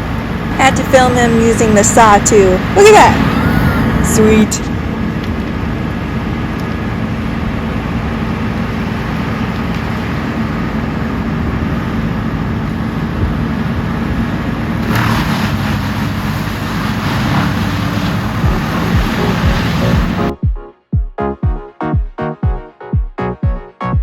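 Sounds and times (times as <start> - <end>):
heavy diesel machinery running: 0.0 - 20.4
harsh rough noise: 2.4 - 4.9, 14.8 - 20.4.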